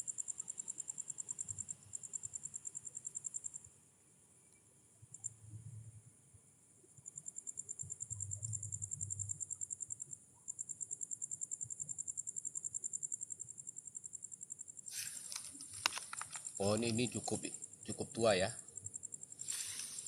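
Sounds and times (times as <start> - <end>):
insect trilling: 7.1 - 20.0
brief rustle: 14.9 - 16.6, 19.4 - 20.0.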